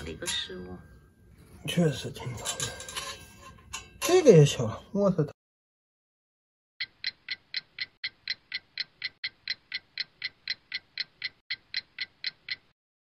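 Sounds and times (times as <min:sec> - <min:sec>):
clock ticking: 0:06.8 - 0:12.8.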